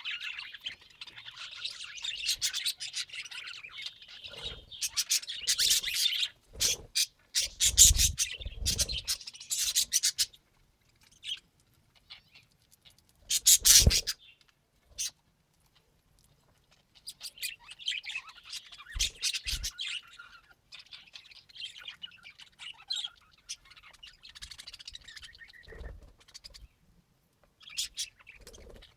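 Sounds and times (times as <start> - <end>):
budgerigars chirping: 0.0 - 10.4, 13.3 - 14.4, 17.0 - 26.6, 27.6 - 28.9.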